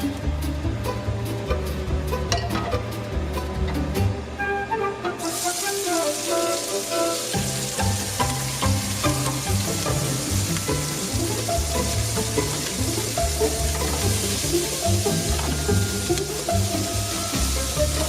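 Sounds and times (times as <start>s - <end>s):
background music: 0.0s - 18.0s
onions sizzling in a frying pan: 5.2s - 18.0s.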